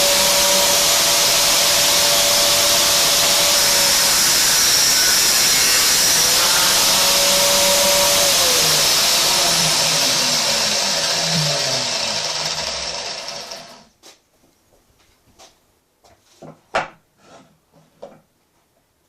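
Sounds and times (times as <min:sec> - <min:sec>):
angle grinder cutting: 0:00.0 - 0:13.9.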